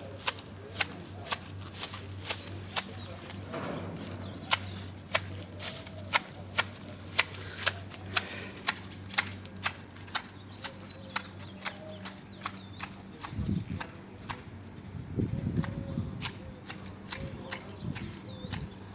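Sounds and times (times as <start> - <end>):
hand shears snipping foliage: 0.0 - 14.5, 15.6 - 18.9.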